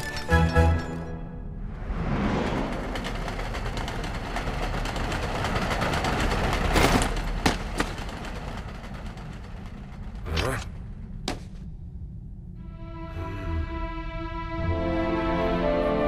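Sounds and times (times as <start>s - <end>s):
whoosh: 1.4s - 4.3s
cartoon train rattling: 2.4s - 11.2s.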